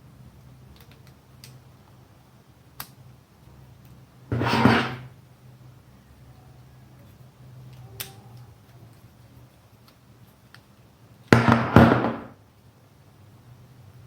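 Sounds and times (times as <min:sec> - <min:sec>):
scrape or rustle: 0:04.3 - 0:05.1.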